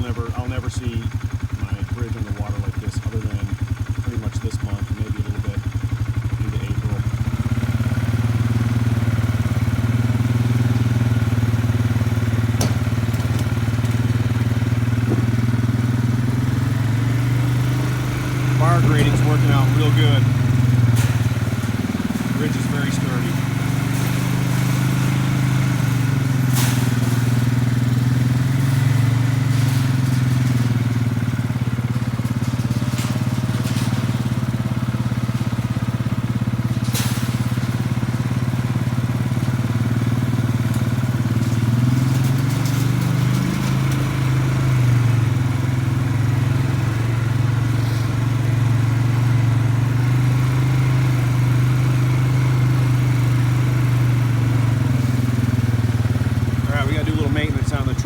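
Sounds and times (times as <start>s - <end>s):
atv engine running: 0.0s - 58.0s
sharp knocks: 12.4s - 15.6s.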